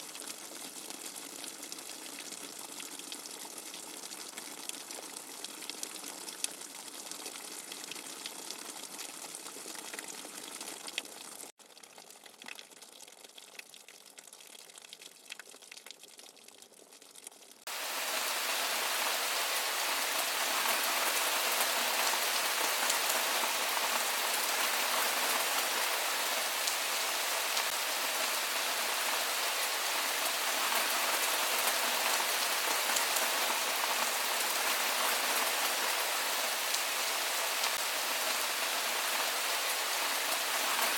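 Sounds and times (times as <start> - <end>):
rain-like white noise hiss: 17.7 - 40.9.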